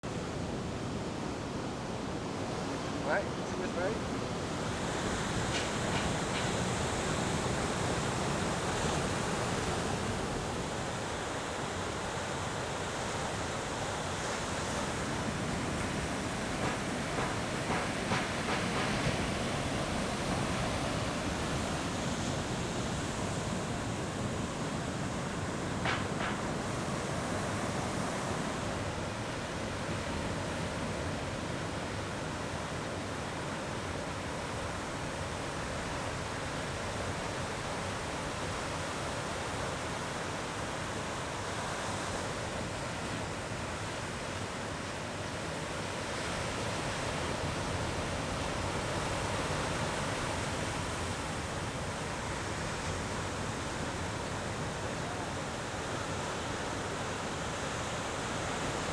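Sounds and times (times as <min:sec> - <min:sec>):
wind: 0:00.0 - 0:58.9
ocean surf breaking: 0:00.2 - 0:58.9.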